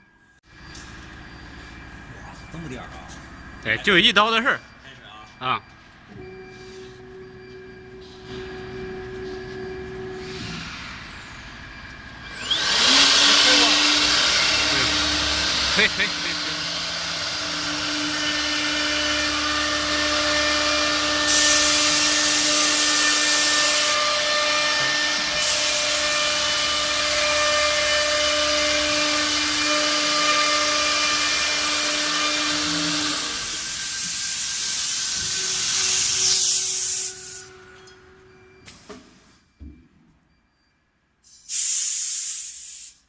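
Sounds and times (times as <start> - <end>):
router spindle whine: 0.5 - 38.6
router bit cutting hiss: 12.3 - 37.5.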